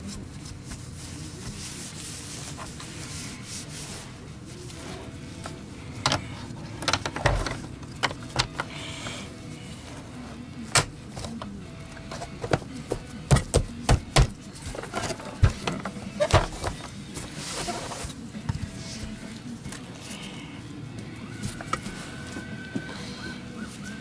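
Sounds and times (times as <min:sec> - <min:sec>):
rubbing scrapes: 0:00.0 - 0:05.5, 0:17.2 - 0:19.0
plastic parts clicking and knocking: 0:06.8 - 0:08.7.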